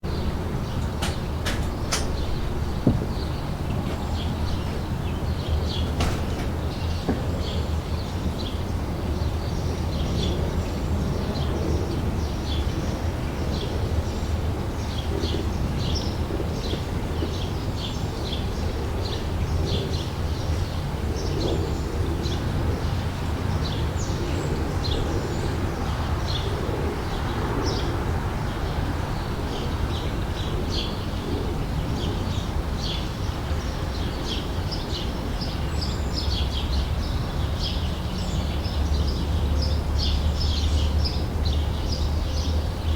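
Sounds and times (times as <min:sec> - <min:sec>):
steady low rumble: 0:00.0 - 0:08.5
birds chirping: 0:00.0 - 0:10.4.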